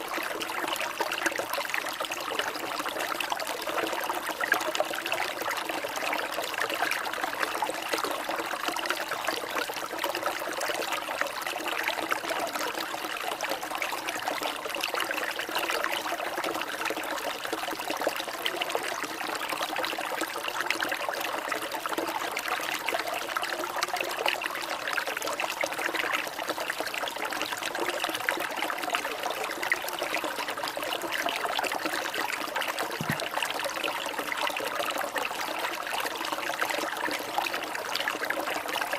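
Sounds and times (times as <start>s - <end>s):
water trickling: 21.2s - 38.9s.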